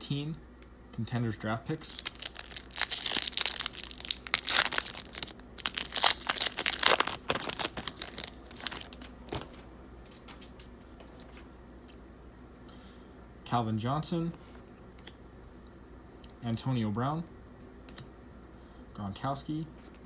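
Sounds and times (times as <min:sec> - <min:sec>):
wrapper tearing and crinkling: 0:01.8 - 0:09.6
cards handling noise: 0:01.8 - 0:12.1.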